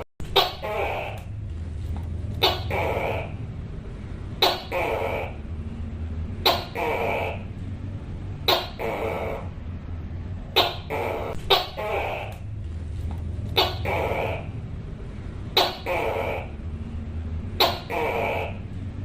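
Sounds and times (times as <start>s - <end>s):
steady low hum: 0.0s - 19.0s
gecko calling: 0.2s - 1.4s, 2.4s - 3.6s, 4.4s - 5.6s, 6.4s - 7.6s, 8.4s - 9.7s, 10.5s - 12.6s, 13.4s - 14.7s, 15.5s - 16.8s, 17.5s - 18.8s.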